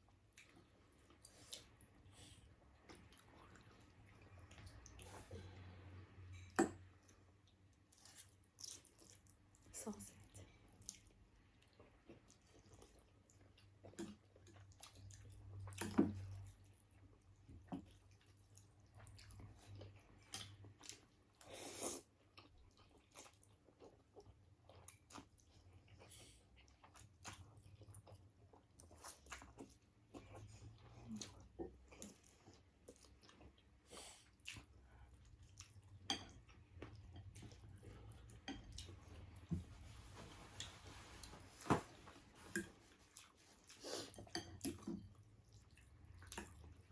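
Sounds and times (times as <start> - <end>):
chewing: 7.0 - 39.6, 42.4 - 46.9.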